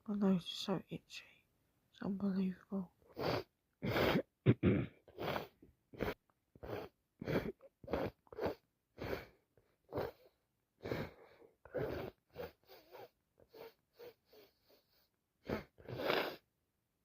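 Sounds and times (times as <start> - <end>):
woman sneezing and sniffing: 3.1 - 9.3, 15.5 - 16.4.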